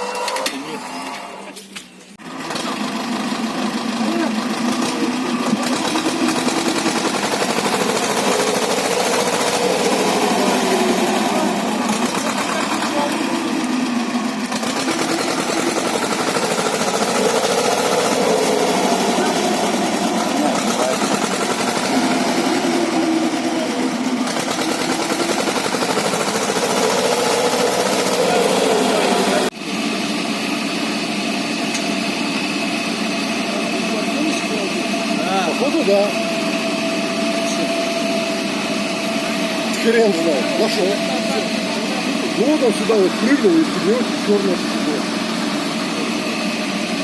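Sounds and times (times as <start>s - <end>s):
van engine rattling under load: 2.2s - 47.0s.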